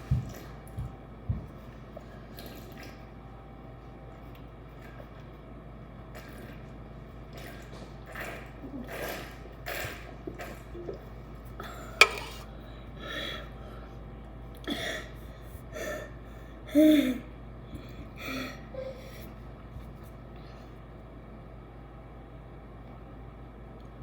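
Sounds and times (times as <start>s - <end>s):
person gulping water: 7.3s - 12.3s.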